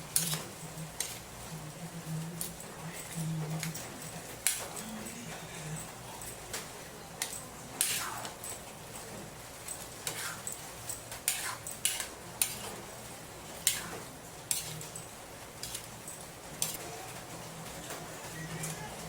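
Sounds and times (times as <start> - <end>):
metal utensil clinking on cooking pot: 0.1 - 1.2, 6.2 - 8.7, 9.6 - 12.9, 13.6 - 16.8.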